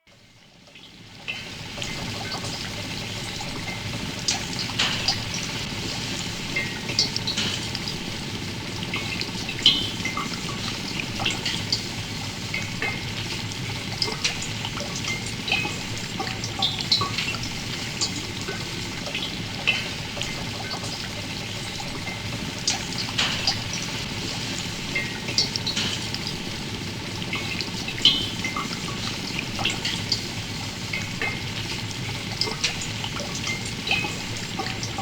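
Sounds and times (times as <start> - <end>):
liquid bubbling and sizzling: 0.0 - 35.0.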